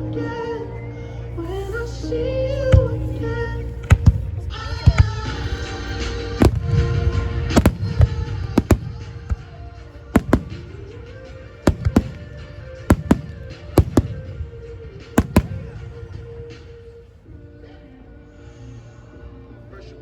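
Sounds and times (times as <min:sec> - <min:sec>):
music over loudspeakers: 0:00.0 - 0:16.7
fireworks bangs: 0:03.8 - 0:16.8.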